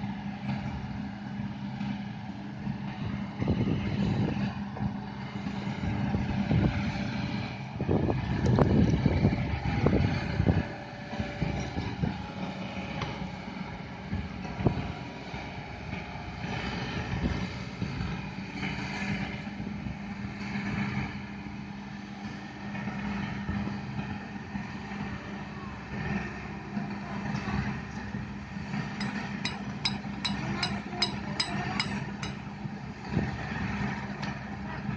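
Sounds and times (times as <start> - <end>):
excavator diesel engine running: 0.0 - 34.9
sharp metal knock: 29.0 - 32.4.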